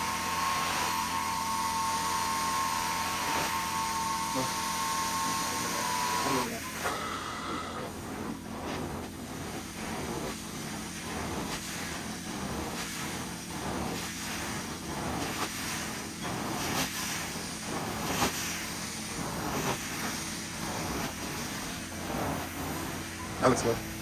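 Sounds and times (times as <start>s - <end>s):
carpet cleaner suction: 0.0s - 24.0s
air rushing: 2.6s - 24.0s.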